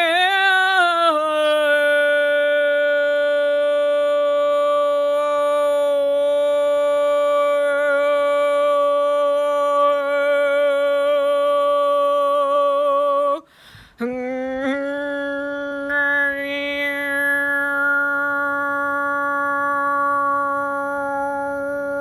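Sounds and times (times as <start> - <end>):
quick breath: 13.4 - 14.0.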